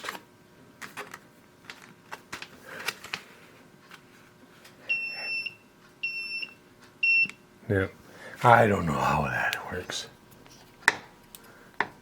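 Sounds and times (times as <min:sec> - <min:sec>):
electronic keypad beep: 0:04.9 - 0:07.4.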